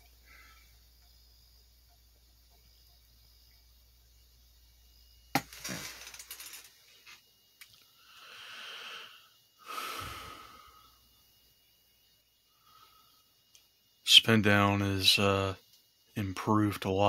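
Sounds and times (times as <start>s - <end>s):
handling noise near microphone: 5.4s - 7.2s
rustling: 5.4s - 7.2s.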